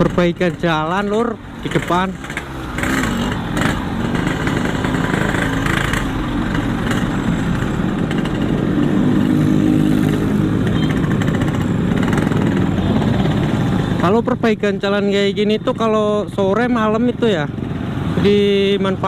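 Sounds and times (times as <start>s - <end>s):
motorcycle engine running: 0.0s - 14.1s.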